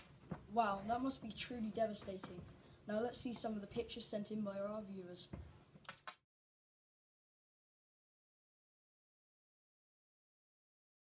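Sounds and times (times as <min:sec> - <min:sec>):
person speaking: 0:00.4 - 0:05.5.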